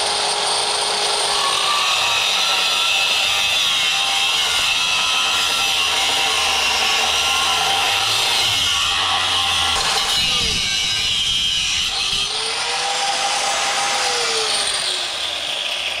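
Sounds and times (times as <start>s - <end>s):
angle grinder grinding metal: 0.0s - 16.0s.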